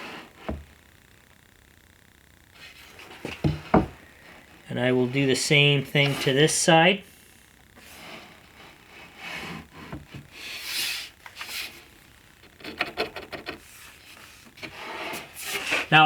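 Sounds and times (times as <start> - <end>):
wood scraping and knocking: 2.8 - 4.4, 7.9 - 10.3, 12.4 - 15.9.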